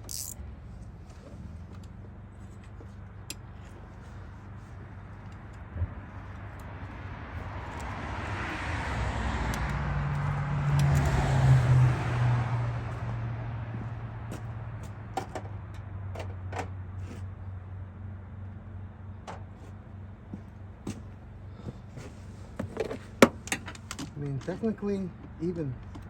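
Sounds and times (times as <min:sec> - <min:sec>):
motor vehicle passing by: 0:05.6 - 0:15.2.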